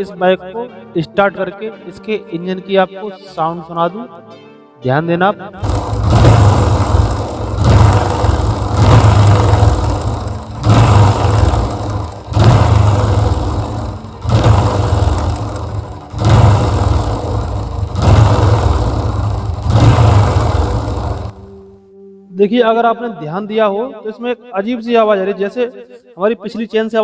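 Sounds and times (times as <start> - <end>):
engine timing chain rattle: 5.6 - 21.6
motorcycle engine revving: 5.6 - 21.8.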